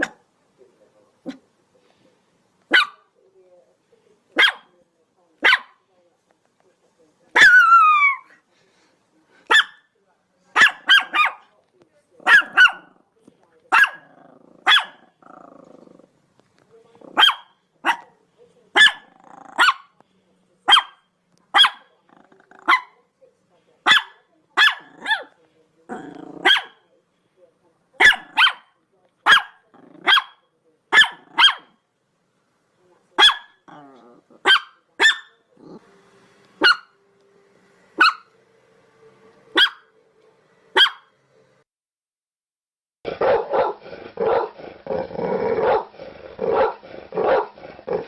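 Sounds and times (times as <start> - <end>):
dog barking: 0.0 - 0.2, 2.7 - 3.1, 4.4 - 4.8, 5.4 - 5.8, 7.3 - 8.3, 9.5 - 9.9, 10.5 - 11.5, 12.2 - 13.0, 13.7 - 15.1, 17.1 - 18.2, 18.8 - 20.0, 20.7 - 21.9, 22.5 - 23.0, 23.8 - 25.4, 26.4 - 26.9, 28.0 - 31.8, 33.2 - 33.8, 34.4 - 35.4, 36.6 - 37.0, 38.0 - 38.3, 39.6 - 39.9, 40.8 - 41.1, 43.1 - 44.6, 45.6 - 45.9, 46.5 - 48.0.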